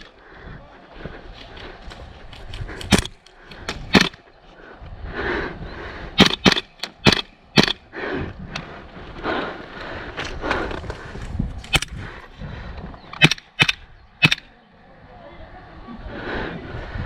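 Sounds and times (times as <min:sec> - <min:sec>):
airsoft gun shots: 0:02.9 - 0:03.2, 0:03.8 - 0:04.2, 0:06.2 - 0:07.8, 0:11.7 - 0:12.0, 0:13.2 - 0:14.5.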